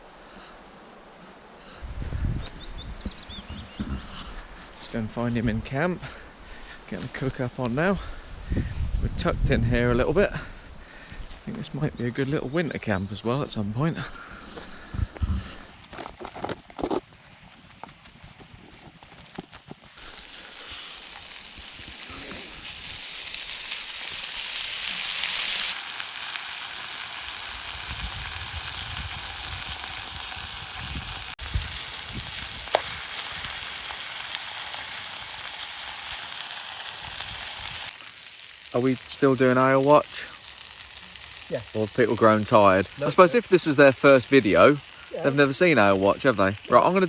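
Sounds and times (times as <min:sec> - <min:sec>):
food sizzling in a pan: 0:16.9 - 0:47.0.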